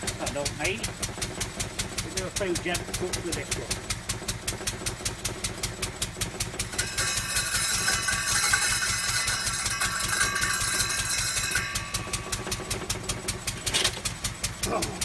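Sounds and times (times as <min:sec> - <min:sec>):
stationary engine running: 0:00.0 - 0:15.0
circular saw cutting wood: 0:06.6 - 0:14.0.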